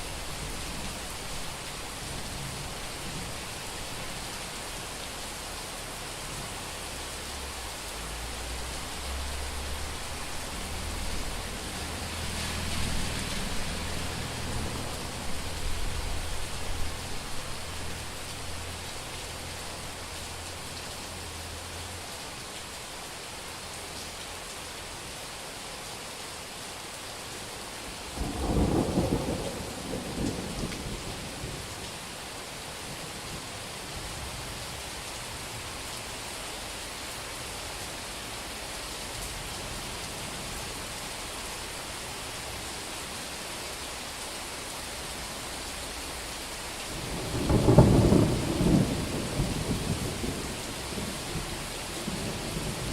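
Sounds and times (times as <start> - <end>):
heavy rain on a street: 0.0 - 52.9
thunder rumbling: 28.2 - 31.1, 47.0 - 52.9.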